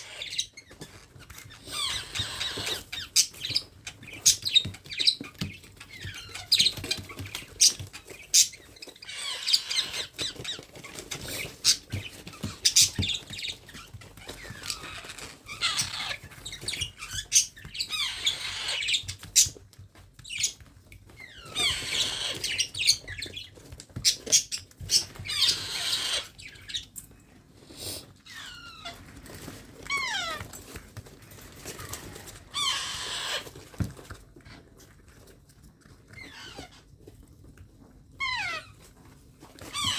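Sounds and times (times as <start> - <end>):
baby parrot squawking: 0.0 - 0.6, 1.6 - 5.3, 5.9 - 13.4, 14.4 - 19.6, 21.3 - 23.3, 24.0 - 26.8, 29.8 - 30.4, 32.0 - 33.6, 36.2 - 36.8, 38.2 - 38.8, 39.6 - 39.9.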